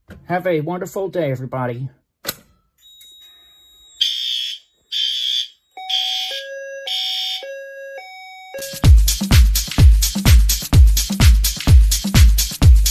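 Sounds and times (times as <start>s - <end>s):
two-tone alarm tone: 2.8s - 8.9s
fire alarm horn blasts: 4.0s - 8.8s.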